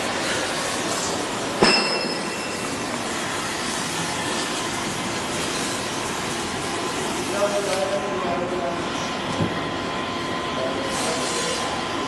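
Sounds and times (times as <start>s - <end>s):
sharp metallic clank: 1.6s - 2.7s.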